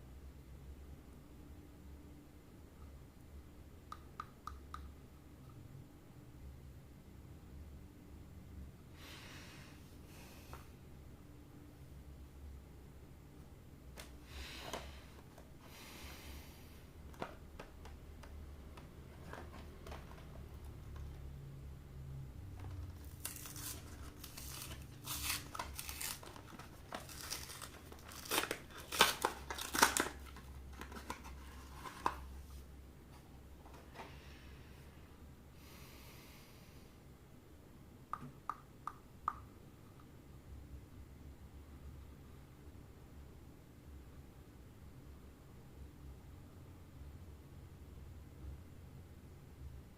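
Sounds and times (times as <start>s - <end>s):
packaging rustle: 22.7s - 32.3s.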